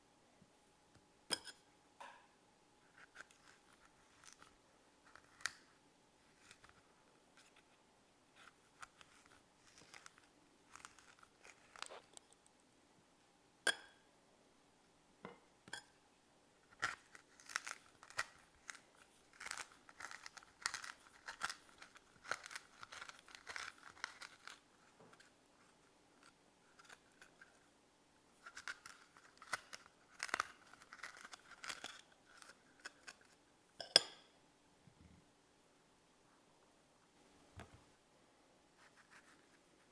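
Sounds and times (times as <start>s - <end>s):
knife cutting and scraping fruit: 2.9s - 7.7s, 8.3s - 12.3s, 16.6s - 27.7s, 28.3s - 33.5s.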